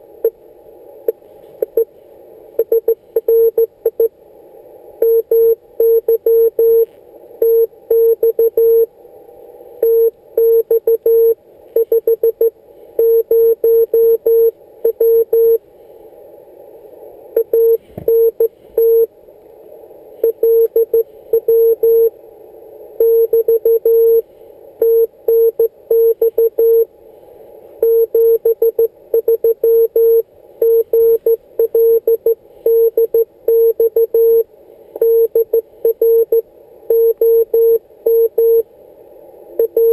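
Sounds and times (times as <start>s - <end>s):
receiver hiss: 0.0s - 39.9s.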